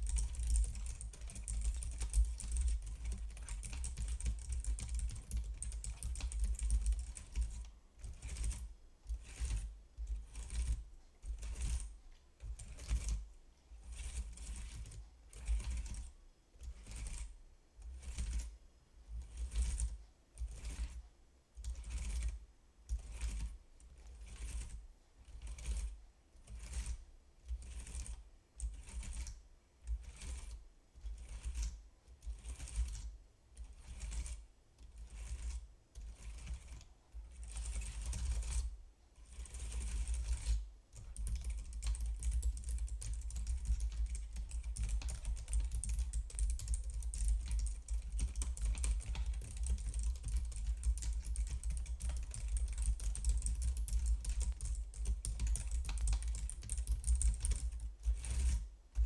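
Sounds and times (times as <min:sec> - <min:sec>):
computer keyboard typing: 0:00.0 - 0:07.6, 0:39.9 - 0:58.6.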